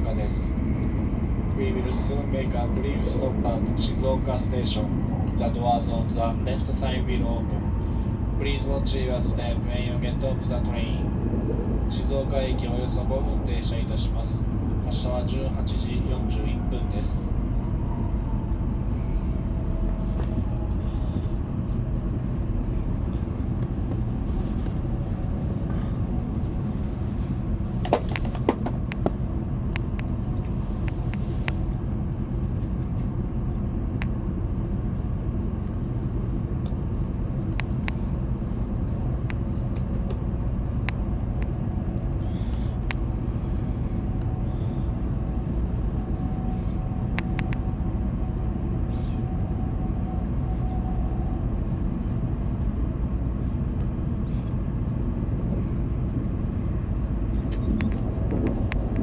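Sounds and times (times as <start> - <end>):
train low rumble and hum: 0.0 - 59.0.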